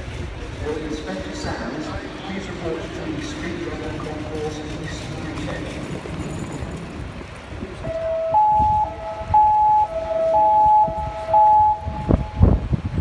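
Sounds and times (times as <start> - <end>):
low traffic rumble: 0.0 - 13.0
two-tone emergency siren: 7.8 - 12.8.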